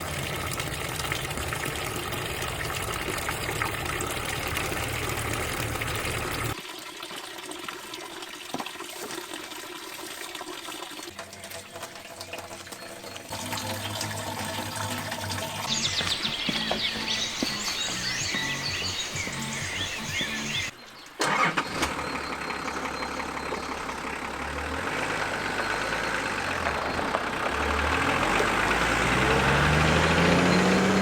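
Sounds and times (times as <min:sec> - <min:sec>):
rushing stream: 0:13.3 - 0:21.8.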